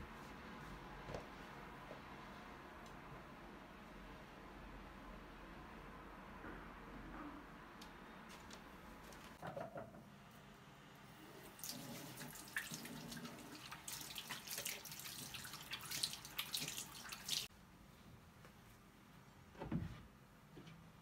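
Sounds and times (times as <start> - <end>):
tap water running into sink: 11.5 - 17.5.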